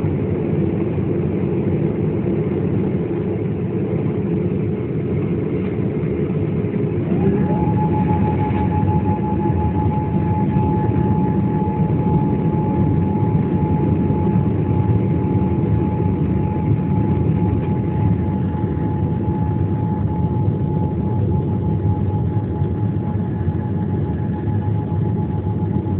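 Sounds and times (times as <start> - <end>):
airliner cabin engine noise: 0.0 - 25.9
whining tone rising: 6.8 - 25.4.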